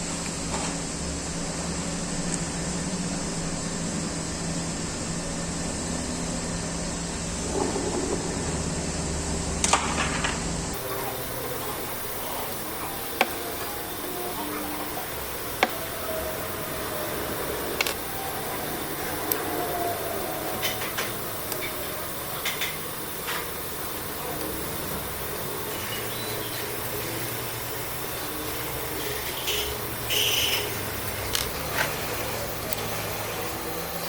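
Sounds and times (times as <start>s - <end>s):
workshop machine motor humming: 10.6s - 34.0s.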